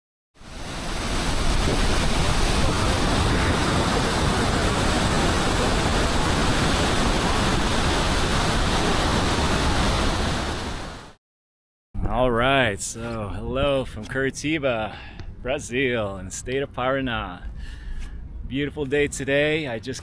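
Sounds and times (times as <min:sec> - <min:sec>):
waterfall roaring: 0:00.4 - 0:11.2.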